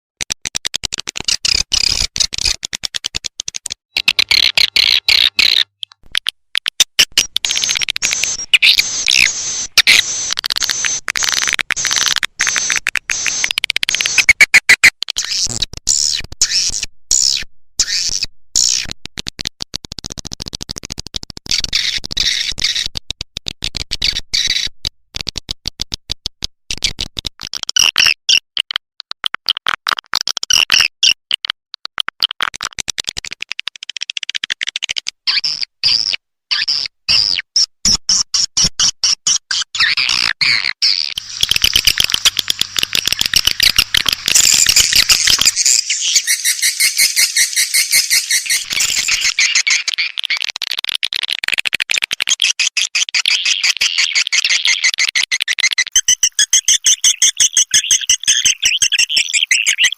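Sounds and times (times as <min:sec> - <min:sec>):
swiftlet chirping twitters: 0:40.9 - 0:50.4, 0:56.0 - 0:59.9.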